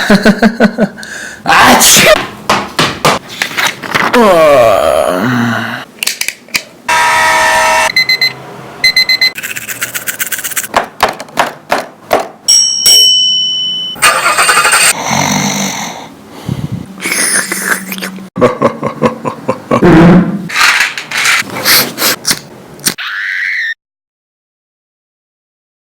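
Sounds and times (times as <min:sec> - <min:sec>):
steady electronic tone: 0:06.9 - 0:09.4
short beeps: 0:07.0 - 0:09.4.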